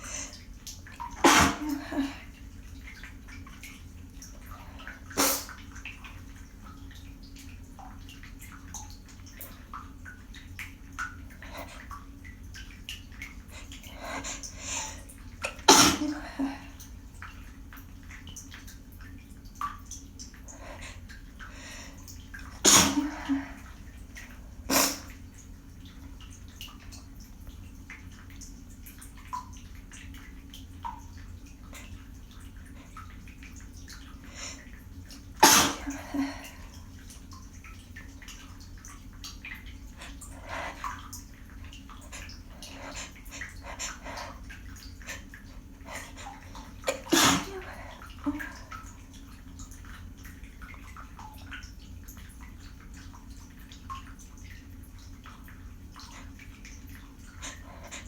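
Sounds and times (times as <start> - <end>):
low background hum: 0.0 - 58.0
person sneezing: 1.2 - 2.2, 5.2 - 5.5, 15.5 - 16.4, 22.6 - 23.6, 35.4 - 36.3, 46.9 - 47.8.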